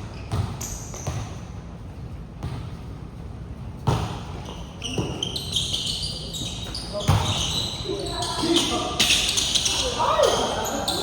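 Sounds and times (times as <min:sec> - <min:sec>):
sneaker squeaks: 0:00.0 - 0:01.6, 0:03.8 - 0:11.0
basketball bouncing: 0:00.2 - 0:01.4, 0:02.4 - 0:02.8, 0:03.8 - 0:05.3, 0:07.0 - 0:07.6.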